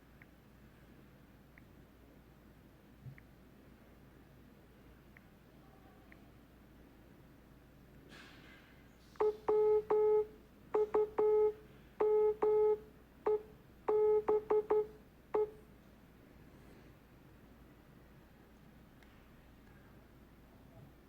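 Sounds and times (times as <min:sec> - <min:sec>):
morse code beeps: 0:09.2 - 0:15.6.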